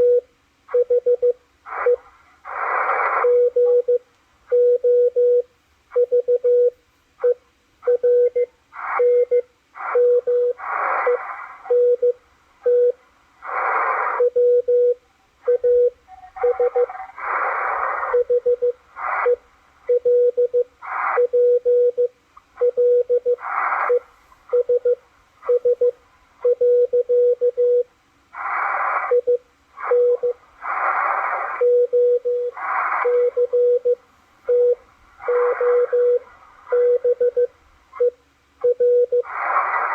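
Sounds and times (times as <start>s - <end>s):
morse code tone: 0.0s - 2.1s, 2.7s - 13.0s, 13.8s - 27.9s, 29.0s - 30.4s, 31.5s - 39.9s
bursts of hissing noise: 28.3s - 31.7s, 32.5s - 33.3s.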